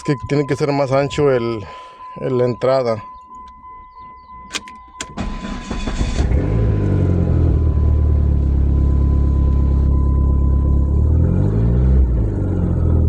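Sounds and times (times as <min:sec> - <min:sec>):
car engine starting and idling: 0:00.0 - 0:13.0
sharp clicks: 0:03.2 - 0:05.4.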